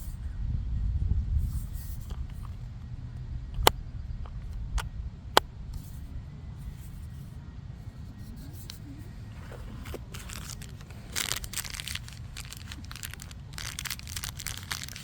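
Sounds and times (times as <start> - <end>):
steady low rumble: 9.0 - 15.0.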